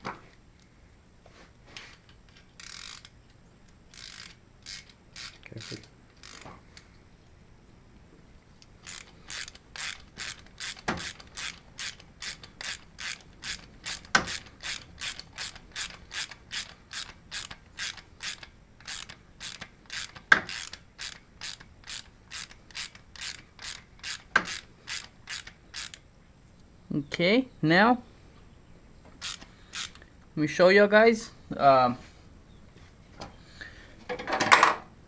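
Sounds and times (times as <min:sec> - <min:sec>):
ratchet clicking: 0:02.3 - 0:03.2, 0:03.9 - 0:06.9, 0:08.7 - 0:26.0, 0:29.2 - 0:30.0.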